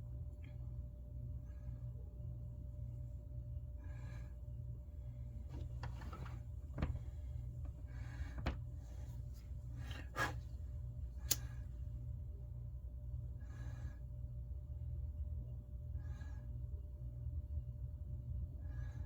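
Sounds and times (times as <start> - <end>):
steady low hum: 0.0 - 19.0
clicks and rustles of hands working: 5.5 - 8.8.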